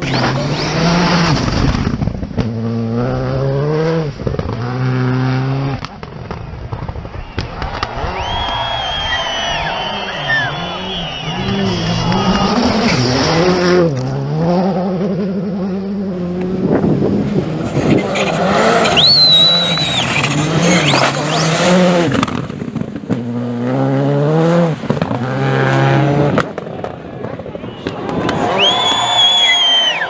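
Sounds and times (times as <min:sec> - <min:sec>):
rally car engine revving: 0:00.0 - 0:27.4
high whistle-like tone: 0:07.2 - 0:12.0, 0:18.8 - 0:21.1, 0:27.7 - 0:30.0.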